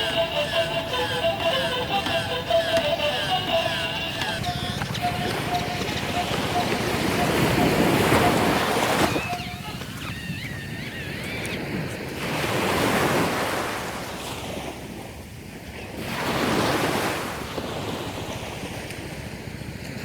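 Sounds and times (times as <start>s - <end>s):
sea waves washing onto shore: 4.2s - 20.0s.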